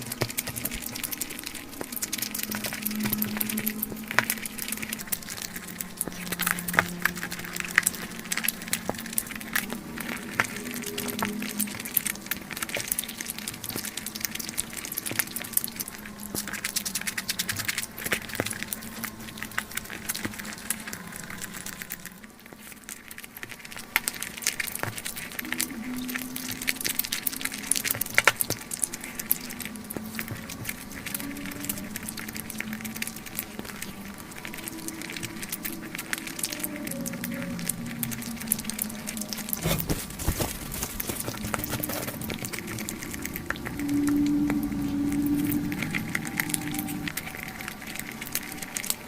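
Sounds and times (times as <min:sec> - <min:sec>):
chewing and mouth smacks: 0:00.0 - 0:49.0
crunching fried chicken: 0:00.0 - 0:49.0.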